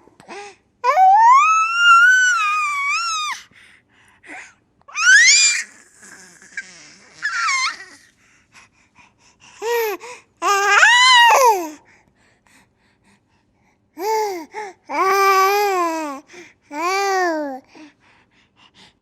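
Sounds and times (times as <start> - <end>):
baby breathing: 7.8 - 10.4.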